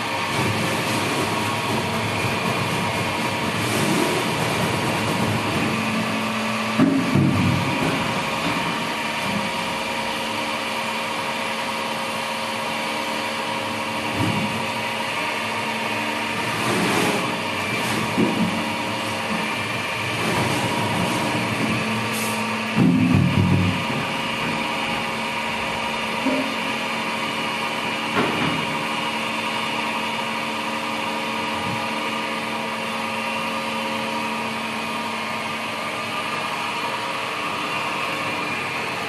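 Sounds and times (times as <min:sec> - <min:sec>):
lathe humming and whining: 0:00.0 - 0:22.9, 0:23.7 - 0:39.0
loud knocks: 0:22.7 - 0:24.9.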